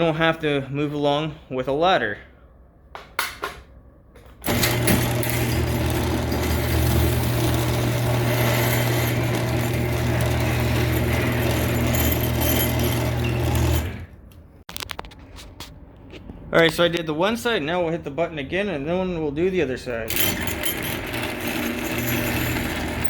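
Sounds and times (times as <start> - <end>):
garage door opener motor humming: 4.4 - 14.2, 20.1 - 23.0
chain rattling along rail: 7.7 - 14.0, 20.1 - 23.0.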